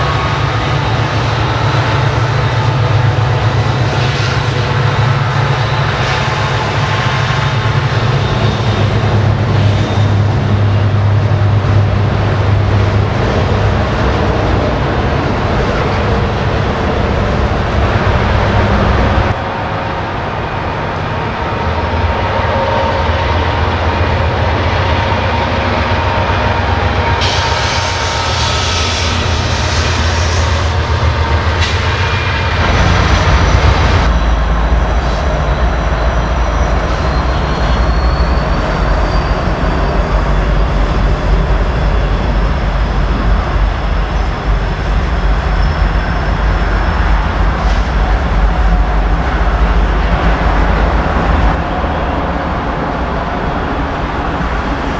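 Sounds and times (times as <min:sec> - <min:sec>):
train wheels rumbling on rails: 0:00.0 - 0:54.9
high wheel squeal: 0:04.2 - 0:12.6, 0:26.0 - 0:31.0, 0:31.6 - 0:51.6.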